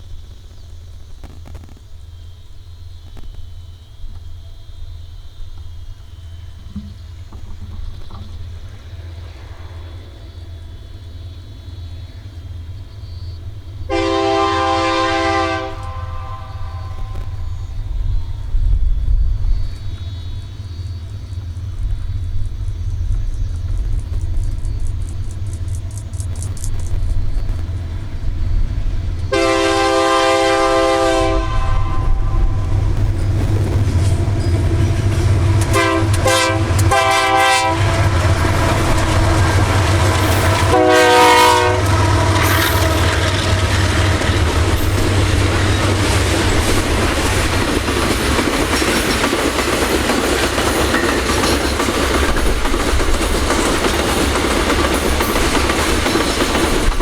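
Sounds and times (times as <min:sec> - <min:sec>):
locomotive engine drone: 0:00.0 - 0:57.0
train wheels clattering on rails: 0:04.1 - 0:57.0
train horn blasts: 0:13.8 - 0:17.9, 0:29.3 - 0:33.1, 0:33.7 - 0:45.8.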